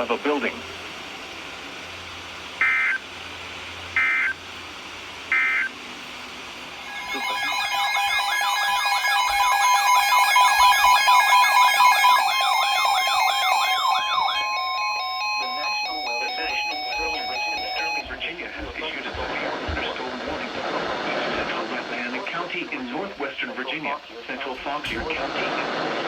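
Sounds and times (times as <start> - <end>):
digital data tone bursts: 2.6 - 3.0, 4.0 - 4.4, 5.3 - 5.8, 6.8 - 18.2
steady beeping tones: 4.0 - 4.4, 5.3 - 5.7, 6.8 - 20.6
warbling electronic alert tone: 6.8 - 18.1.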